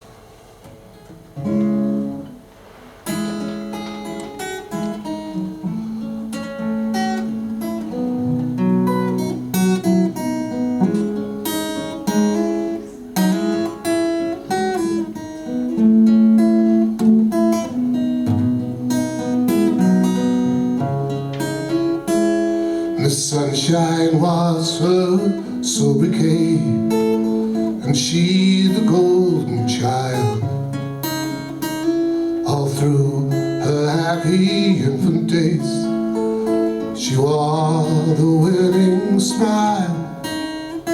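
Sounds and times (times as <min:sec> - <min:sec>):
acoustic guitar chords: 0:00.0 - 0:40.9.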